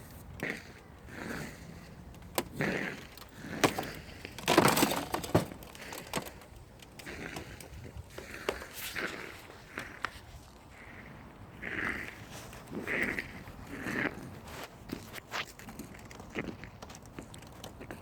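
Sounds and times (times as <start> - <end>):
ice cracking and crunching: 1.2 - 10.0.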